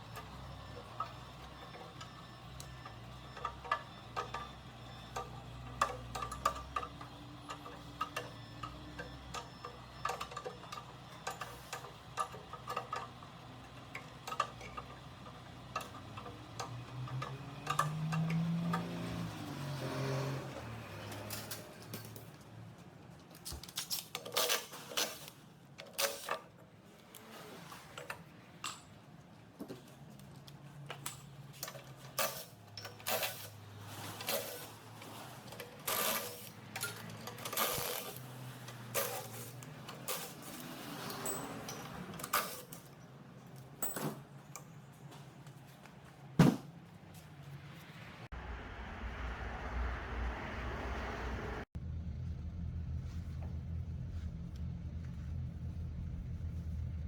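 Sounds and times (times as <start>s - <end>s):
metal clicks and clinks: 5.1s - 14.9s
low steady hum: 48.3s - 57.0s.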